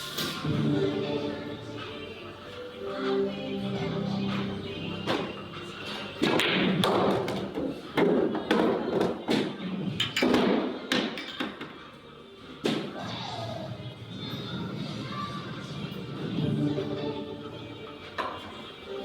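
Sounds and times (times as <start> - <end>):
background music: 0.0 - 19.0.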